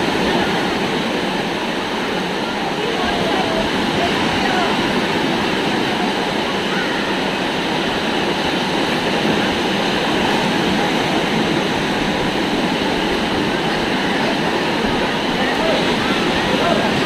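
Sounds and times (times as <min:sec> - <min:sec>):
ocean surf breaking: 0:00.0 - 0:17.0.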